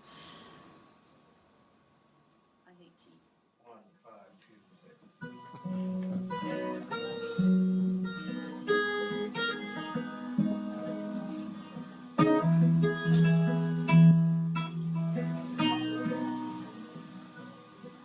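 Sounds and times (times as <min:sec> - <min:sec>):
acoustic guitar picking chords: 0:05.0 - 0:18.0.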